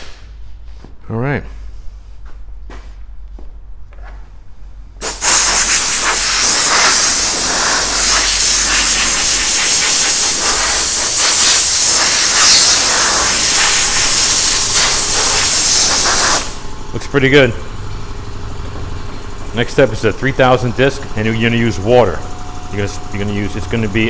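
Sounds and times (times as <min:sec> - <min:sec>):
compressed air hissing: 0:05.0 - 0:24.0.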